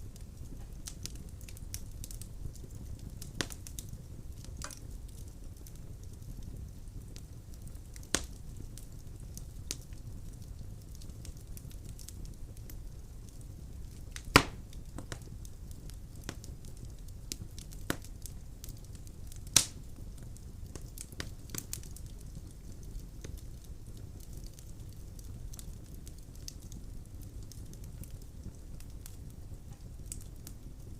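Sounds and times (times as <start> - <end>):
fire flames rumbling: 0.0 - 30.9
firewood crackling: 0.0 - 30.9
sharp firewood pops: 14.3 - 14.6.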